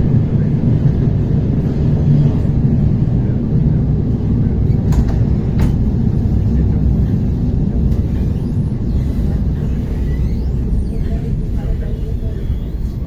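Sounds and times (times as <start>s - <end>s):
train wheels rumbling: 0.0s - 13.0s.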